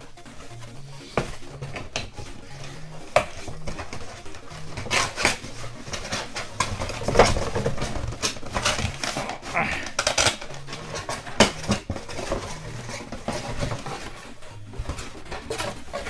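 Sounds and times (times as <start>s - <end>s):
cardboard rustling and scraping: 0.0s - 16.0s.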